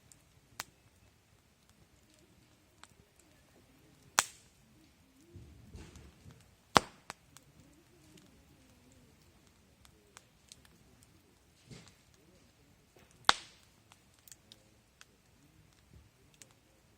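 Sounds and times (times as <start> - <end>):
wood fire crackling: 0.0 - 16.9
sharp pops of fire: 0.1 - 1.8, 3.9 - 5.0, 5.8 - 7.5, 9.2 - 12.2, 12.9 - 16.6.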